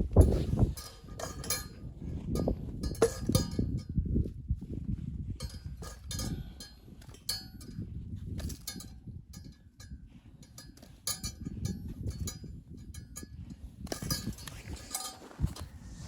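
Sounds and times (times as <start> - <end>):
metal cookware clinking: 0.3 - 3.9, 5.4 - 7.8, 10.5 - 15.6.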